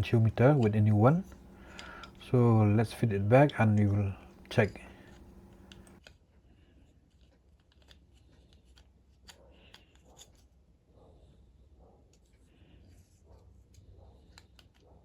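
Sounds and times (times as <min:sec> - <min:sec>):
soft handling of small parts: 0:00.0 - 0:10.6
faint clicks: 0:00.6 - 0:06.0.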